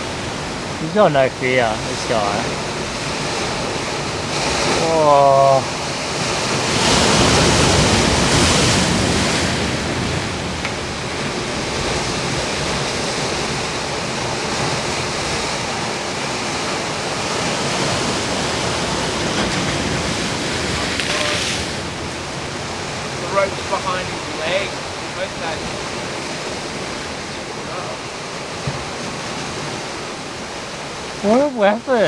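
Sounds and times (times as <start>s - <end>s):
ocean surf breaking: 0.0s - 32.0s.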